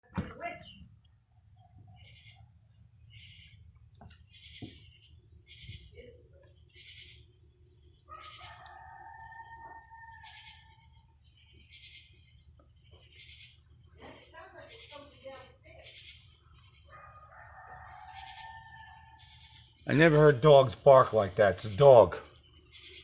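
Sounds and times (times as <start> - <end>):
insects chirping: 0.3 - 23.0
dog howling: 8.1 - 10.8.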